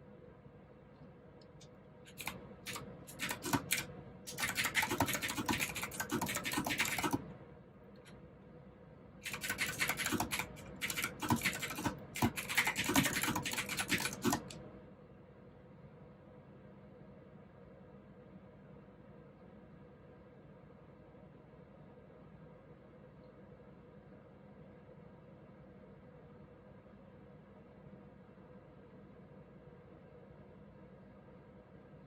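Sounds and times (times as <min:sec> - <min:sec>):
typing on mechanical keyboard: 0:02.1 - 0:07.3, 0:09.2 - 0:14.6.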